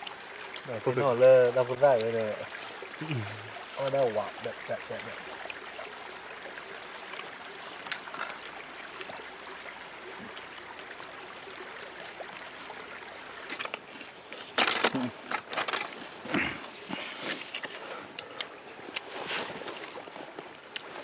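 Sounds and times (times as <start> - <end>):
creek water running: 0.0 - 21.0.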